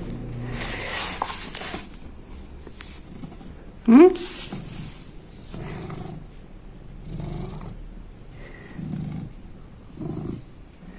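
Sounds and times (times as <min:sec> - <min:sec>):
cat purring: 0:02.8 - 0:10.9.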